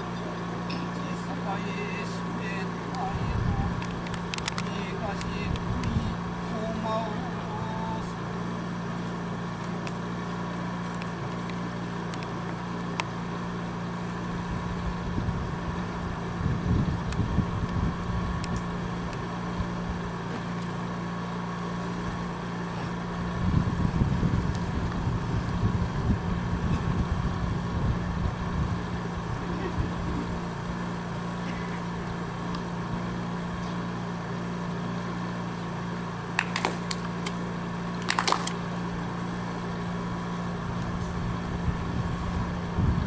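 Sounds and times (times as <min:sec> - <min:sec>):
steady low hum: 0:00.0 - 0:43.0
wind buffeting microphone: 0:14.5 - 0:18.6, 0:23.2 - 0:30.6, 0:40.9 - 0:43.0.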